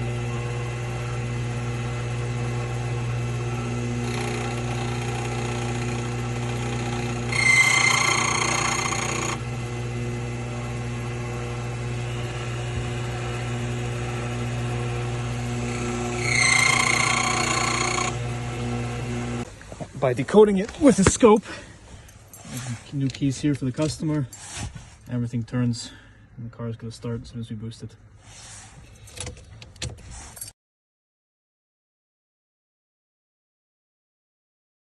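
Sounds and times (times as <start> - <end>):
key-cutting machine motor hum: 0.0 - 19.5.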